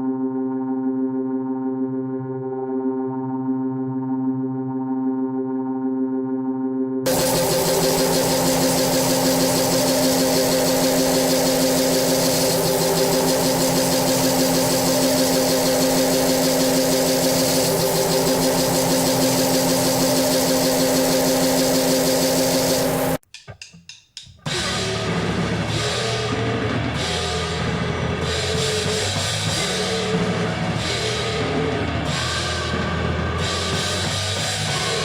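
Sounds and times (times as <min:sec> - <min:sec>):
distorted noise wall: 0:07.1 - 0:23.2
low buzzing drone: 0:07.1 - 0:23.2.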